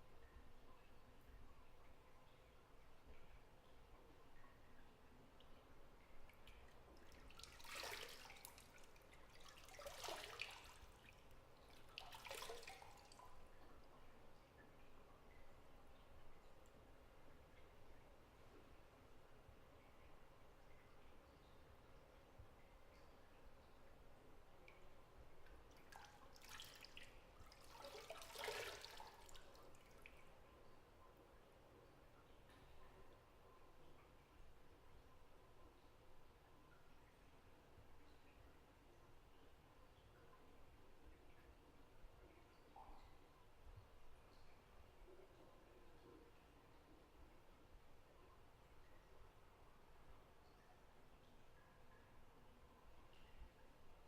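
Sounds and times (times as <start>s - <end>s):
bathwater splashing gently: 5.4s - 14.0s, 24.6s - 30.3s.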